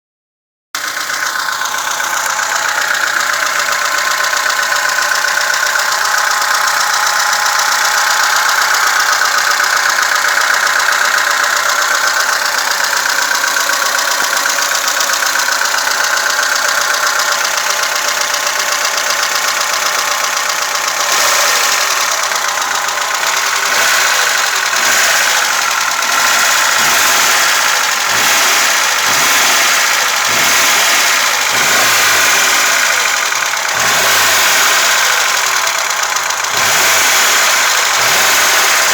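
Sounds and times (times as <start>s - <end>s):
car engine running: 0.8s - 38.9s.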